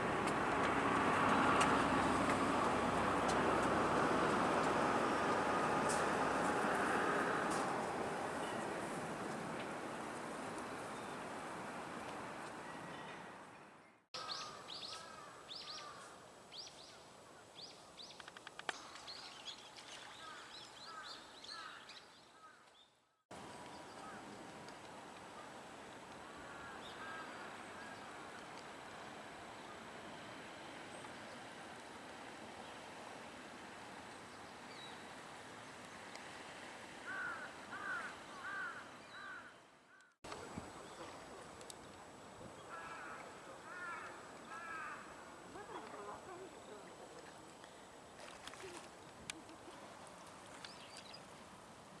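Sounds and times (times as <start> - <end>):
outdoor background hiss: 0.0 - 52.0
crow cawing: 26.5 - 27.4, 37.1 - 40.1, 42.7 - 45.1.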